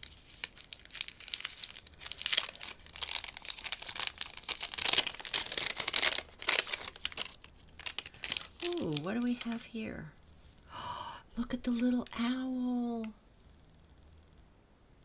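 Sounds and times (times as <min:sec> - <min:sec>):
gift wrapping crinkling and tearing: 0:00.0 - 0:09.7.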